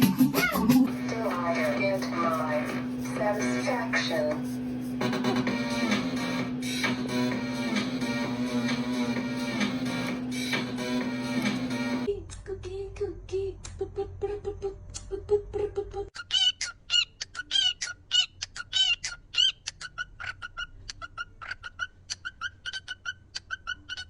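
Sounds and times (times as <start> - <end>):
parrot calling: 16.2 - 24.0.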